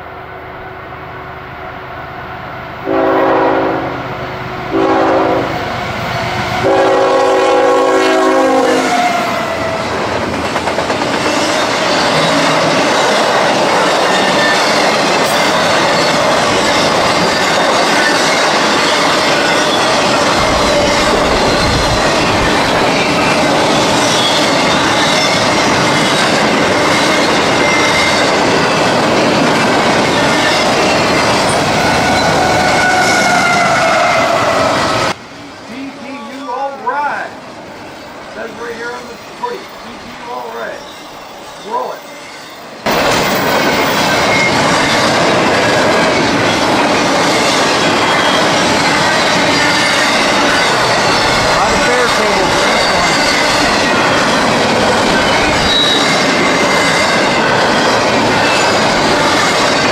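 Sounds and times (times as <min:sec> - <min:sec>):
locomotive air horn blasts: 0:02.9 - 0:04.0, 0:04.7 - 0:05.6, 0:06.6 - 0:09.4
train wheels clattering over rails: 0:08.8 - 0:33.0, 0:42.8 - 0:59.9.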